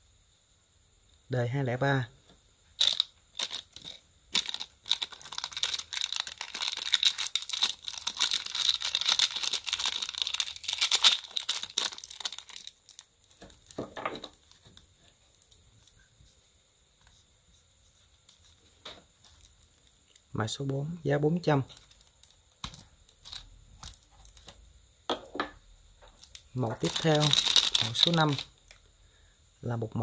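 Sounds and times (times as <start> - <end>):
lighter crackling and crinkling: 2.8 - 13.7, 26.2 - 28.8.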